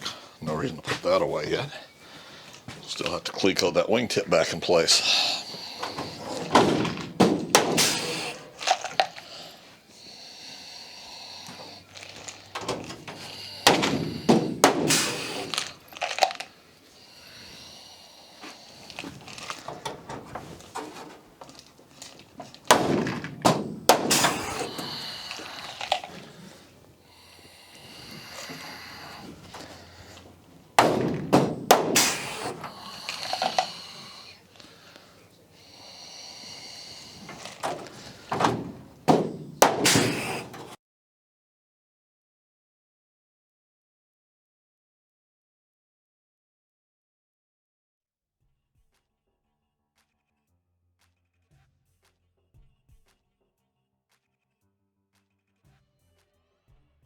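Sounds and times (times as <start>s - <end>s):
handling noise: 0.0s - 40.8s
sheet metal clattering: 4.7s - 8.6s, 11.5s - 16.4s, 18.8s - 26.8s, 27.8s - 34.1s, 37.1s - 40.8s.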